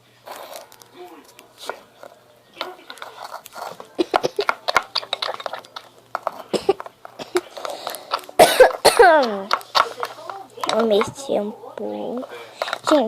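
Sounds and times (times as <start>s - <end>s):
television voices: 0.0s - 13.0s
spoon scraping in a bowl: 2.6s - 6.5s.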